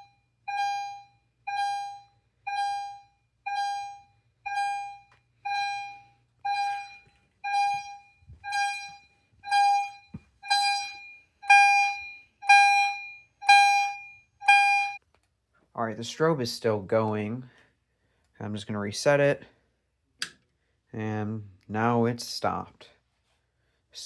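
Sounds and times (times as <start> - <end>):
fire alarm chimes: 0.0 - 15.0.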